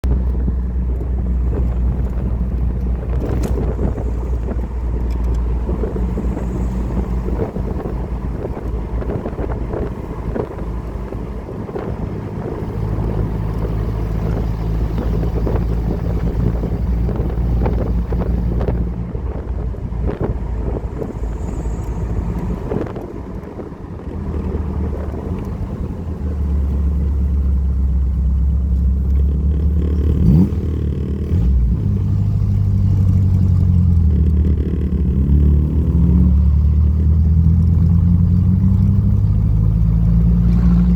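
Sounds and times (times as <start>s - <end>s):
wind buffeting microphone: 0.0s - 28.2s
car engine running: 0.0s - 40.9s.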